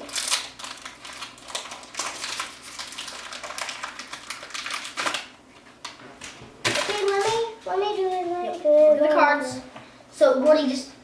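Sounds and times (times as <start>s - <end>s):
foil wrapper crinkling: 0.0s - 7.6s.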